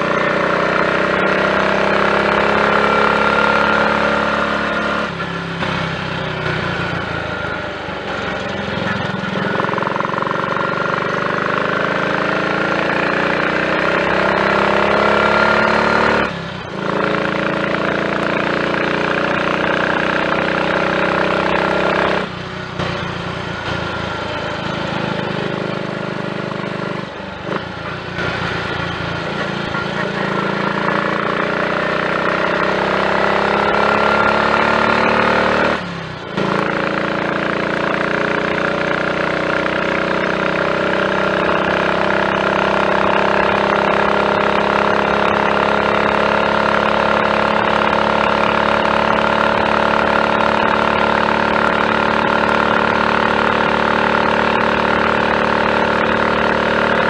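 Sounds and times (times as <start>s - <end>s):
motorcycle engine accelerating: 0.0s - 57.0s.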